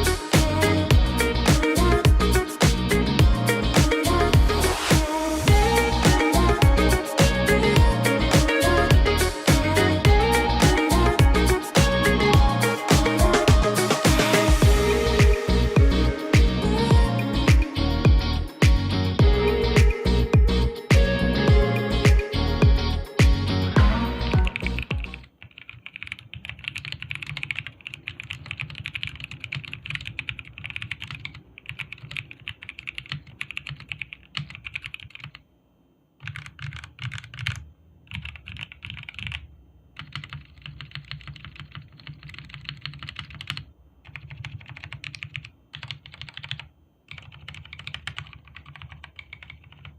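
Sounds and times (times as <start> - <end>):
mechanical keyboard typing: 24.4 - 35.4, 36.2 - 49.9.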